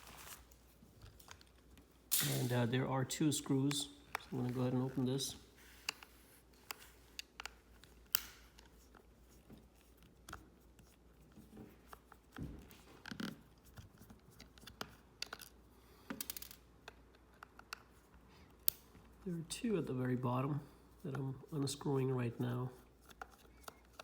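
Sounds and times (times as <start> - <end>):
screwdriver clicks and scrapes: 5.7 - 11.0.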